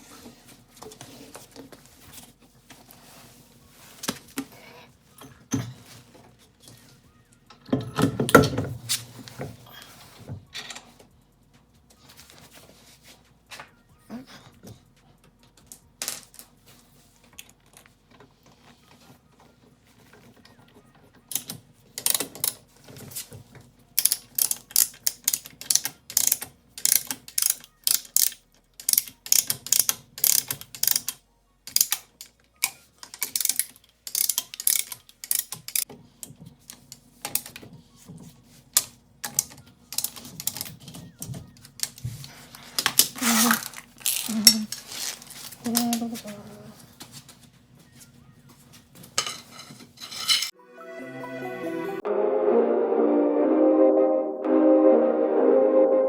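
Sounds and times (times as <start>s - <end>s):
ratchet wrench clicking: 24.0s - 32.1s, 33.1s - 35.8s.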